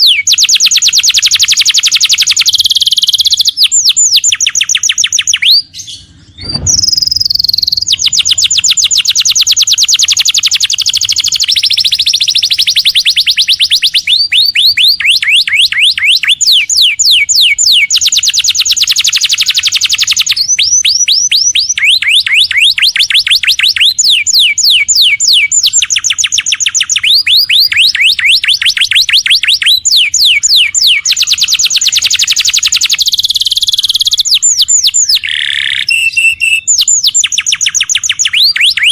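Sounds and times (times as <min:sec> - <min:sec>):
canary singing trills: 0:00.0 - 0:38.9
low thump: 0:06.4 - 0:07.3.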